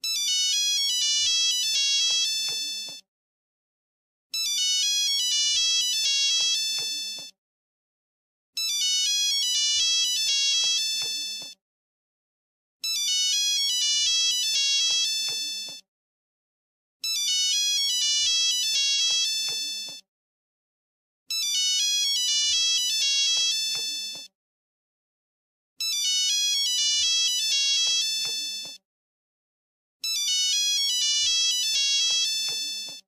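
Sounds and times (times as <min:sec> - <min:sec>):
mobile phone ringtone melody: 0:00.0 - 0:03.0, 0:04.4 - 0:07.3, 0:08.6 - 0:11.6, 0:12.8 - 0:15.8, 0:17.0 - 0:20.0, 0:21.3 - 0:24.3, 0:25.8 - 0:28.8, 0:30.0 - 0:33.0.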